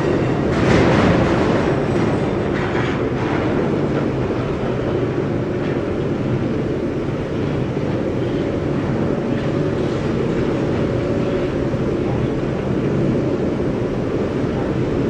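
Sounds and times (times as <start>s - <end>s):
loud rough industrial furnace noise: 0.0s - 15.0s.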